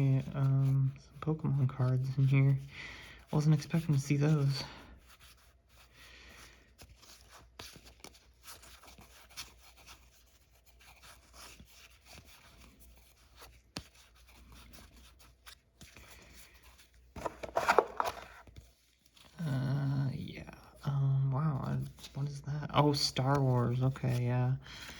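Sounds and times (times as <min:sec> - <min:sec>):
cards rustling and clicking: 0:03.2 - 0:19.5, 0:21.7 - 0:24.9.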